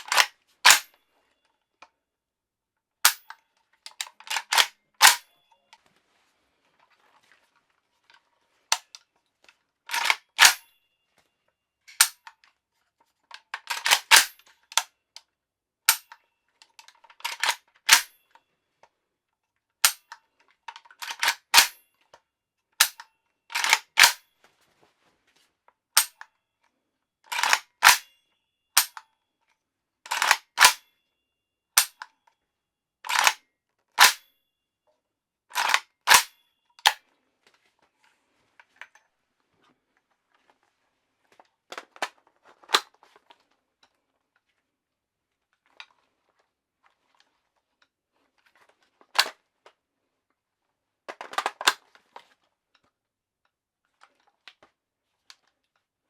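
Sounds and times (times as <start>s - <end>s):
metallic gun clacks: 0.0s - 0.9s, 3.1s - 5.5s, 9.9s - 10.7s, 11.9s - 12.3s, 13.6s - 14.8s, 27.3s - 28.2s, 33.1s - 33.4s, 35.6s - 37.0s.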